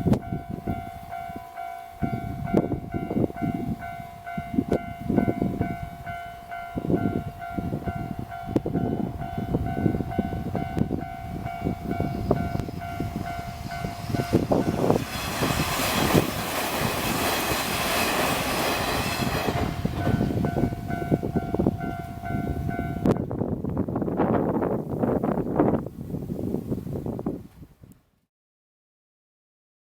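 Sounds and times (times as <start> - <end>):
level crossing warning bell: 0.0 - 15.1, 18.9 - 23.3
train wheels clattering: 10.6 - 22.5.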